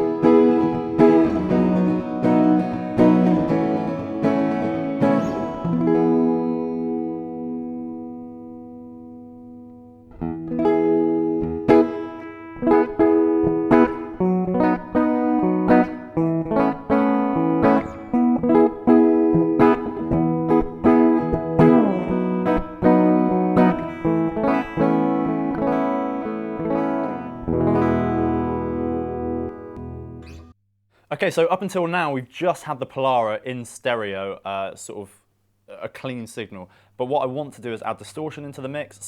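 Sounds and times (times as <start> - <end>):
clean guitar with reverb: 0.0 - 30.6.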